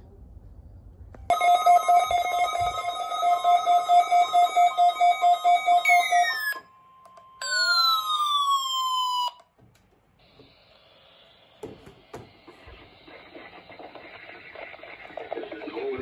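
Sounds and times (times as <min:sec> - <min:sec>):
rapid pulsing electronic beeps: 0:01.3 - 0:06.6, 0:12.5 - 0:16.0
clicks: 0:06.4 - 0:07.4.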